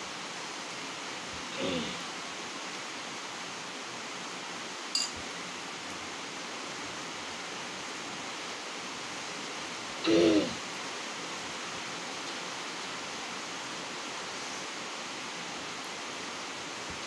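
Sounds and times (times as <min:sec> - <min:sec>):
heavy rain: 0:00.0 - 0:17.0
person making short voiced sound: 0:01.6 - 0:02.0, 0:10.0 - 0:10.6
light clink: 0:04.9 - 0:05.2.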